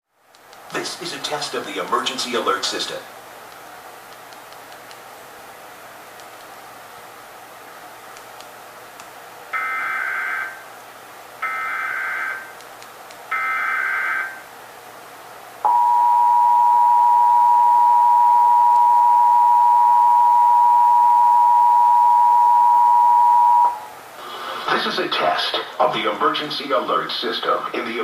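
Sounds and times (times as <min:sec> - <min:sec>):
two-tone attention signal: 0:15.7 - 0:23.9.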